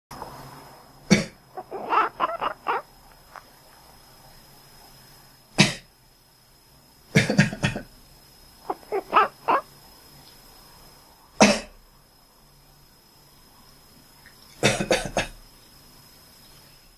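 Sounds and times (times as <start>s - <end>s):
cat chirping: 1.6s - 2.9s, 8.7s - 9.7s
person coughing: 11.4s - 11.8s, 14.6s - 15.4s.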